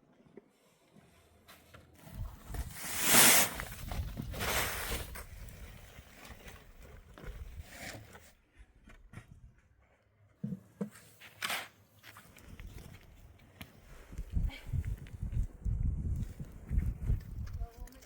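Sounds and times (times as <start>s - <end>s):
wind gusting across microphone: 13.9s - 18.0s.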